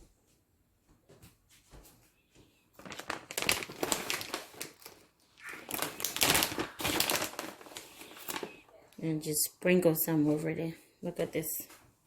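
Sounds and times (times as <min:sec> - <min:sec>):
plastic packaging crinkling: 0:02.8 - 0:08.9.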